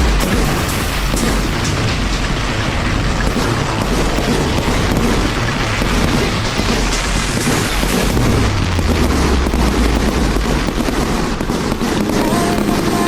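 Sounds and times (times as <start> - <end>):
fireworks booms and crackling: 0.0 - 13.0
music: 12.0 - 13.0.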